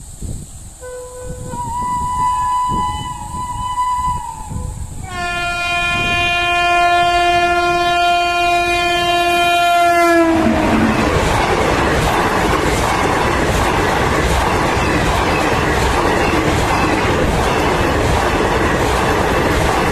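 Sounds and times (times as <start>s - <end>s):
locomotive horn: 0.8s - 11.4s
train rushing past: 3.2s - 19.9s
coaches rattling on track: 10.2s - 19.9s.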